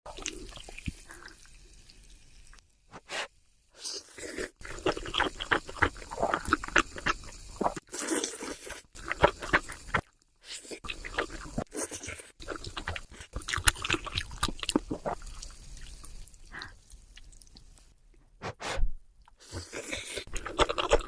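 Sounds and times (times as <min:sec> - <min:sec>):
crisp crunching and chewing: 0:10.8 - 0:15.6, 0:19.6 - 0:21.0.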